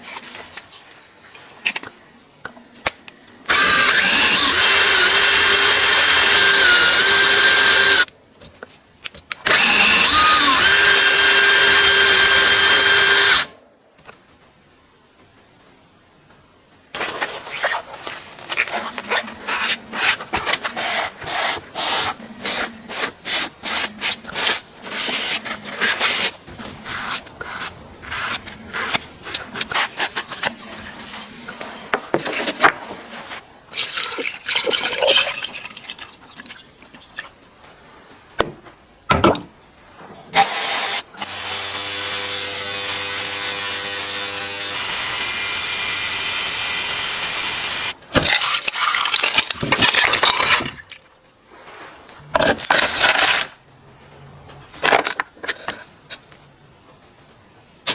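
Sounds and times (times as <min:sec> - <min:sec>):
steady mechanical whir: 0:40.4 - 0:47.9.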